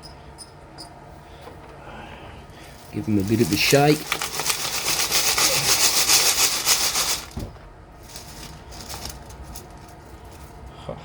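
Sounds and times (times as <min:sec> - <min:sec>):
gravel rattling when shaken: 0:02.8 - 0:07.4, 0:08.0 - 0:10.6.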